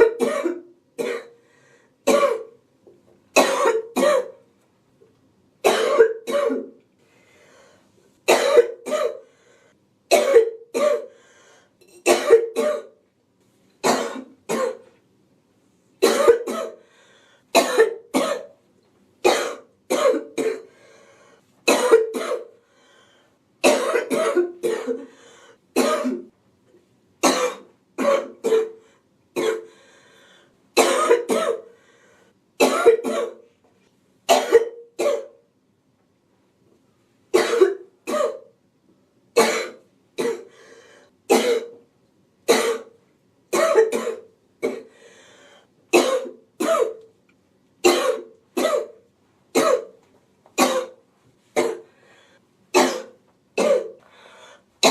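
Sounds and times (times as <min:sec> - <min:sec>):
woman coughing: 0:00.0 - 0:01.4, 0:02.1 - 0:02.5, 0:03.4 - 0:04.4, 0:05.6 - 0:06.8, 0:08.3 - 0:09.3, 0:10.1 - 0:11.2, 0:12.0 - 0:13.0, 0:13.8 - 0:14.9, 0:16.0 - 0:16.8, 0:17.6 - 0:18.6, 0:19.3 - 0:20.7, 0:21.7 - 0:22.6, 0:23.6 - 0:25.2, 0:25.8 - 0:26.3, 0:27.2 - 0:28.8, 0:29.4 - 0:29.7, 0:30.8 - 0:31.7, 0:32.6 - 0:33.4, 0:34.3 - 0:35.4, 0:37.4 - 0:38.5, 0:39.4 - 0:40.5, 0:41.3 - 0:41.8, 0:42.5 - 0:45.0, 0:46.0 - 0:47.0, 0:47.8 - 0:49.0, 0:49.6 - 0:50.0, 0:50.6 - 0:51.0, 0:51.6 - 0:51.9, 0:52.8 - 0:54.0
faint breaths: 0:01.4 - 0:02.0, 0:07.0 - 0:08.0, 0:09.2 - 0:09.9, 0:11.1 - 0:11.8, 0:16.8 - 0:17.6, 0:20.7 - 0:21.6, 0:22.6 - 0:23.5, 0:25.0 - 0:25.7, 0:29.7 - 0:30.6, 0:31.7 - 0:32.4, 0:40.5 - 0:41.2, 0:44.9 - 0:45.8, 0:51.9 - 0:52.6, 0:54.0 - 0:54.8.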